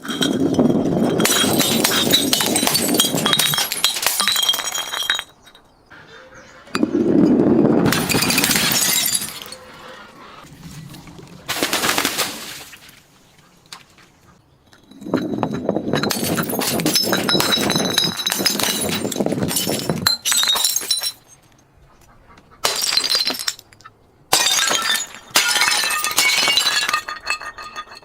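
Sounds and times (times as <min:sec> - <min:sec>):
glass bottles breaking: 0:00.0 - 0:05.6, 0:07.8 - 0:09.7, 0:14.9 - 0:21.4, 0:22.6 - 0:28.0.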